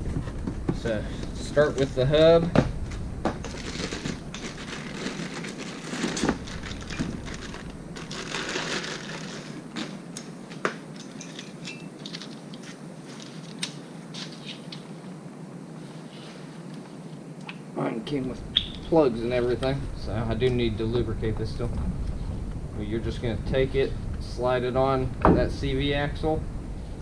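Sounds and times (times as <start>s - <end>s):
plastic packaging crinkling: 2.9s - 10.2s.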